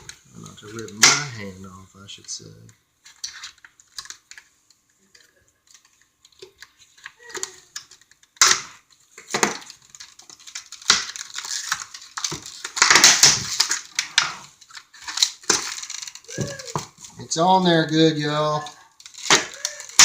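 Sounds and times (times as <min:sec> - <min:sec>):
packaging crunching and scraping: 0:08.9 - 0:17.3, 0:18.8 - 0:20.0.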